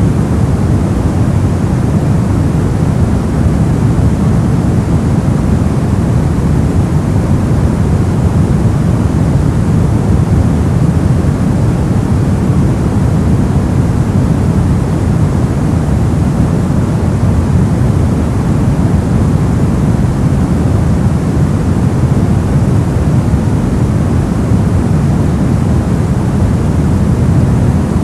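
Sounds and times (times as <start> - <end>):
deep rumbling hiss: 0.0 - 28.0.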